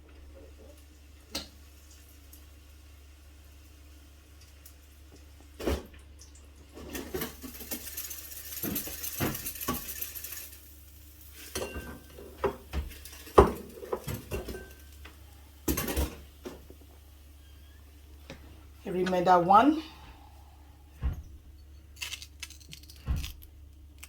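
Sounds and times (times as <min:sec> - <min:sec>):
cookware and utensils clattering: 0:06.7 - 0:10.6, 0:11.2 - 0:16.6.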